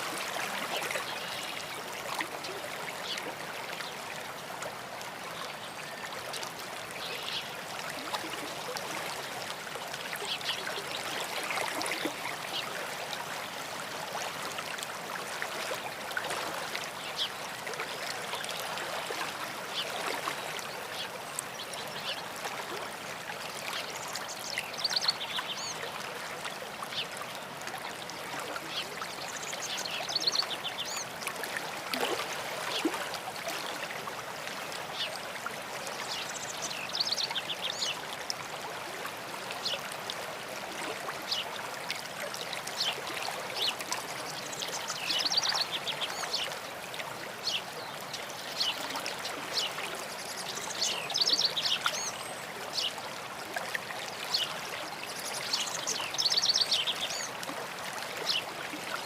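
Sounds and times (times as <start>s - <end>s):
stream running: 0.0s - 59.0s.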